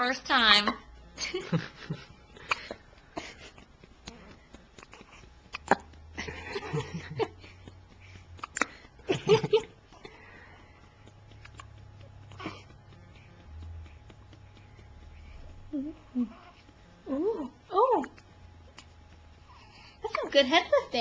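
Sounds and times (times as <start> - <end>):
baby hiccupping: 4.0 - 6.0, 8.4 - 8.8.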